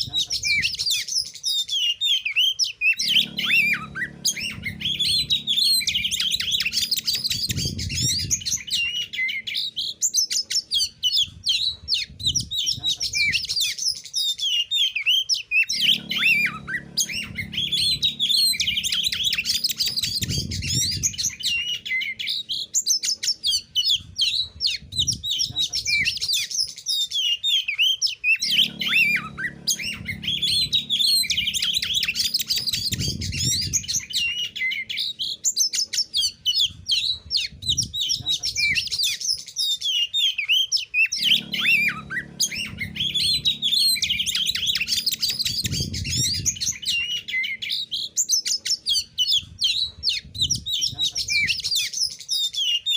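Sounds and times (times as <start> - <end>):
bird singing: 0.0 - 52.9
low hum: 2.9 - 10.0, 15.6 - 22.7, 28.3 - 35.4, 41.1 - 48.1.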